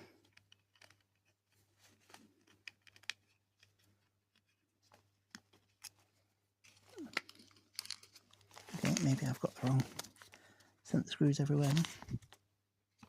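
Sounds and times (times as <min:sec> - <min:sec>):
small parts clicking and tapping: 0:00.2 - 0:06.0, 0:06.7 - 0:09.1.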